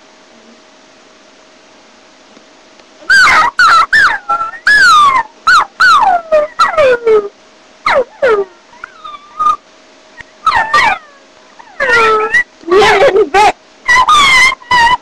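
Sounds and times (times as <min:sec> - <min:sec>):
person imitating puppy whimpers: 0:04.0 - 0:05.2, 0:05.9 - 0:07.3, 0:07.9 - 0:09.6, 0:10.2 - 0:15.0.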